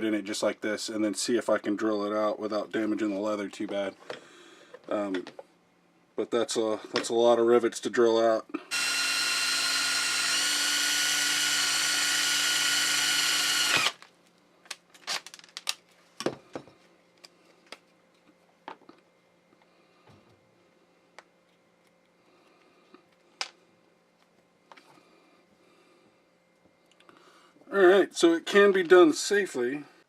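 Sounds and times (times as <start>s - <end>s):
power drill drilling rivet: 8.7s - 14.0s.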